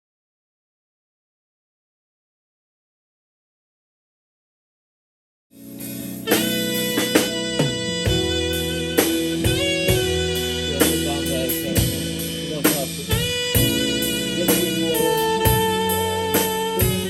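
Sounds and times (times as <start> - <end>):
drum kit steady beat: 5.7 - 17.0
sustained pitched notes: 5.7 - 17.0
guitar: 5.8 - 17.0.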